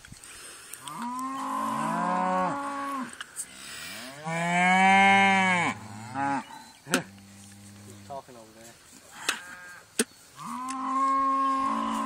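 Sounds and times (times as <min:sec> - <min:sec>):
bull bellowing: 0:00.8 - 0:03.2, 0:04.0 - 0:08.1, 0:09.1 - 0:12.0.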